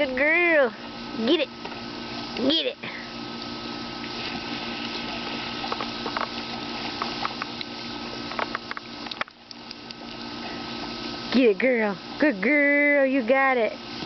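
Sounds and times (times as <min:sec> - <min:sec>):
garden hose spraying water: 0:00.0 - 0:14.0.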